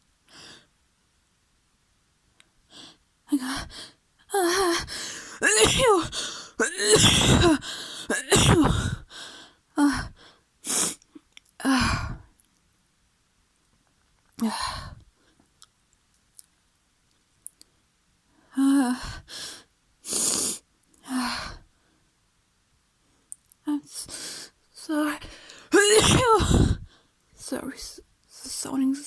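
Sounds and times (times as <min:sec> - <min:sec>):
bursts of breath: 0:04.8 - 0:09.6
person sneezing: 0:05.1 - 0:09.0, 0:25.7 - 0:26.9.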